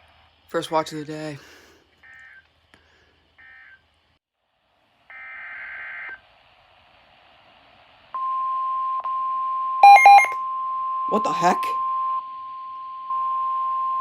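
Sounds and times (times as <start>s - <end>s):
steady warning alarm tone: 9.8s - 10.4s.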